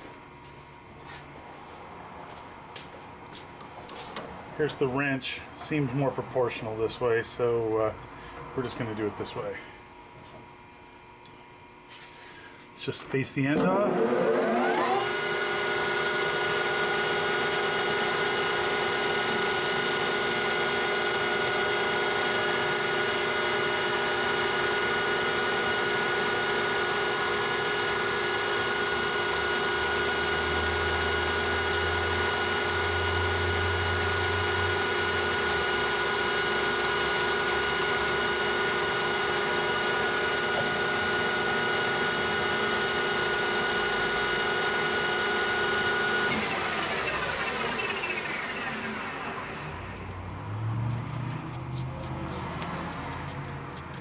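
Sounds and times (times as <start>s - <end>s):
metal lathe whining: 13.6s - 50.3s.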